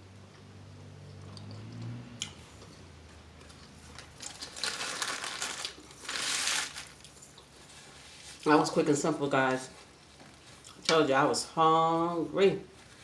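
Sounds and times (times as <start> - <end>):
crackly rustling eating noises: 2.5 - 11.1.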